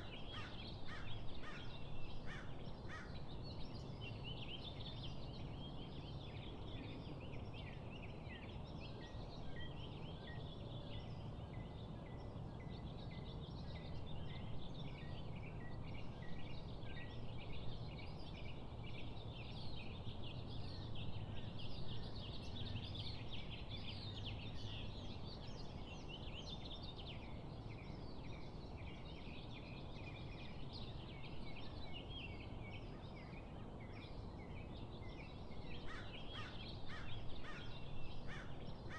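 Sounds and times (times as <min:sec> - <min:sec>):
birds chirping and twittering: 0:00.0 - 0:38.9.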